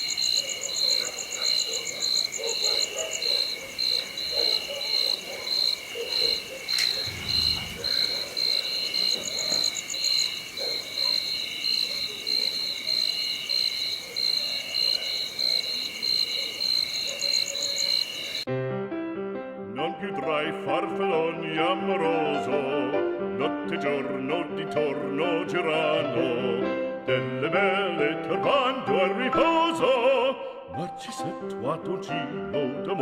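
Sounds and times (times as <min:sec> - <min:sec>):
frogs croaking: 0:00.0 - 0:18.5
insects chirping: 0:00.0 - 0:18.5.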